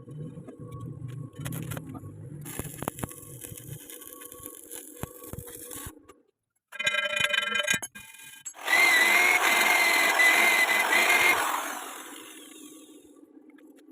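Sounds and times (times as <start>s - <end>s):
angle grinder grinding steel: 6.8s - 13.0s.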